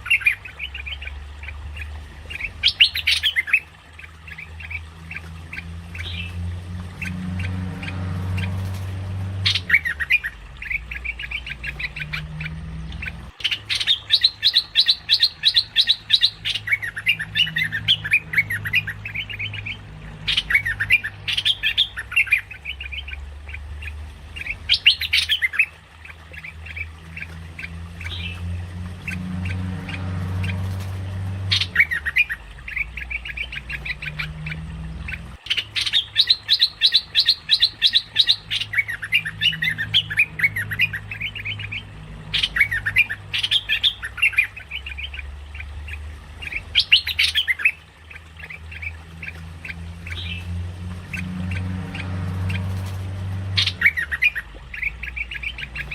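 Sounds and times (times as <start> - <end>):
bulbul chattering calls: 0.0 - 6.4, 9.4 - 30.9, 31.5 - 55.9
steady low hum: 0.0 - 36.2.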